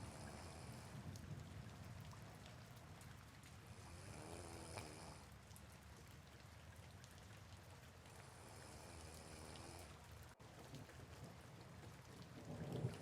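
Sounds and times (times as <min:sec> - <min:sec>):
faint snore: 0:00.0 - 0:01.0, 0:03.8 - 0:05.3, 0:08.3 - 0:10.0
soft rain falling: 0:00.0 - 0:13.0.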